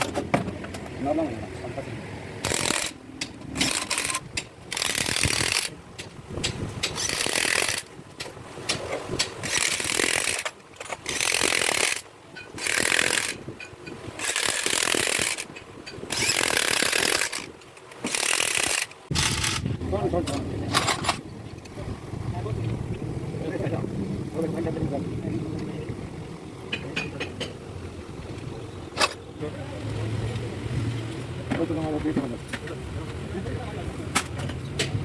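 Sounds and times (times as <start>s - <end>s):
power tool bursts: 2.4s - 3.0s, 3.6s - 5.7s, 7.0s - 7.9s, 9.4s - 12.0s, 12.6s - 13.4s, 14.2s - 15.5s, 16.1s - 19.7s.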